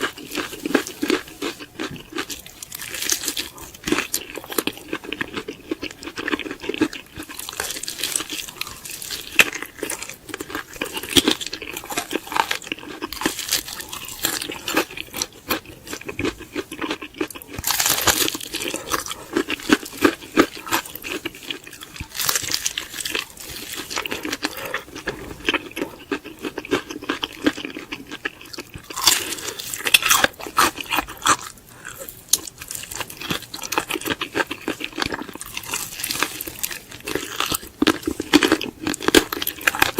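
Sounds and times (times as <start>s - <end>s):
crunching fried chicken: 0.0s - 39.9s.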